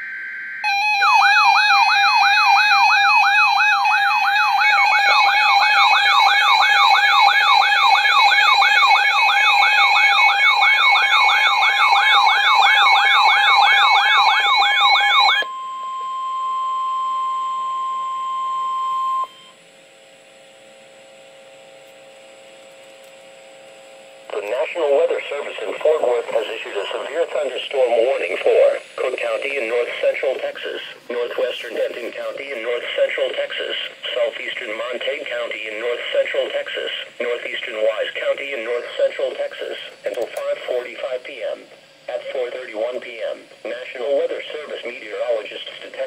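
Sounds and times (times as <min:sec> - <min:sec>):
faint hum: 0:00.0 - 0:46.0
siren-like warbling alert tone: 0:00.1 - 0:19.5.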